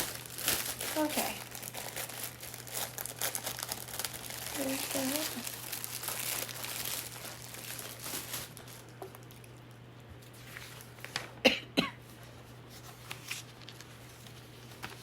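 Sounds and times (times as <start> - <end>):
wrapping paper rustling: 0.0 - 9.6, 10.2 - 11.4, 12.1 - 15.0
woman coughing: 11.4 - 12.0.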